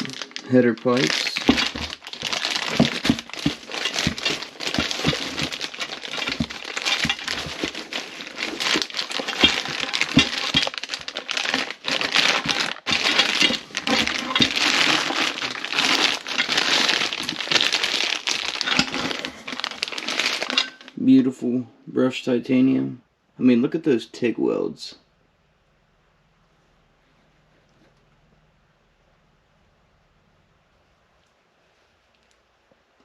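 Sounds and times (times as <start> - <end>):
packaging wrap crinkling: 0.0 - 21.0.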